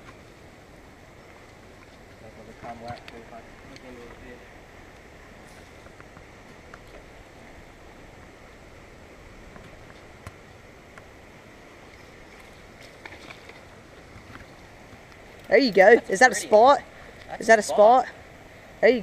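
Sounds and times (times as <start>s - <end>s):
river water rushing: 4.4s - 19.0s.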